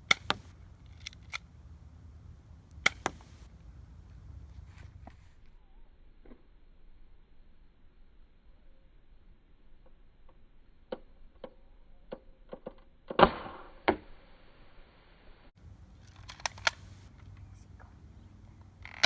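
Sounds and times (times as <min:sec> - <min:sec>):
sharp clicks and knocks: 0:00.0 - 0:01.4, 0:02.8 - 0:03.5.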